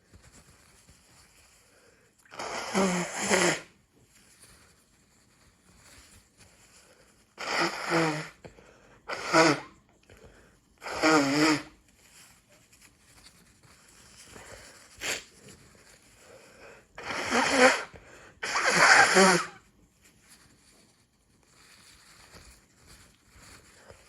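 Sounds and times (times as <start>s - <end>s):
person sneezing: 7.4s - 8.4s, 9.1s - 9.8s, 15.0s - 15.4s, 17.0s - 19.6s.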